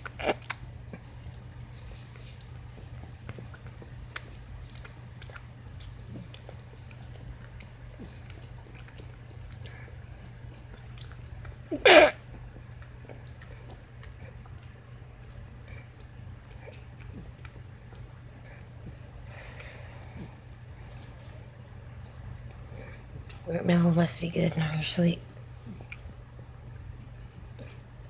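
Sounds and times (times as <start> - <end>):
puppy mouth smacking clicks: 0.0 - 11.7, 25.3 - 26.6.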